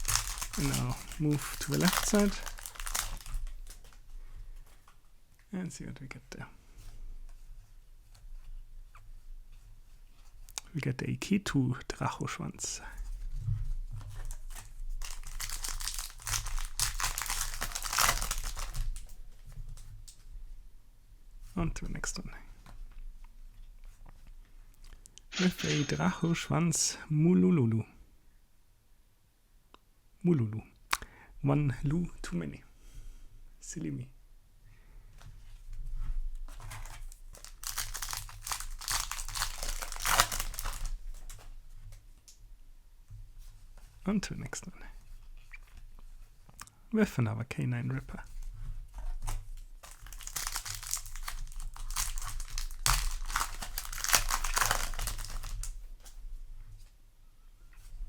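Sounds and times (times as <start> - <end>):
foil wrapper crinkling: 0.0 - 4.0, 14.1 - 19.1, 36.6 - 41.5, 49.6 - 56.2.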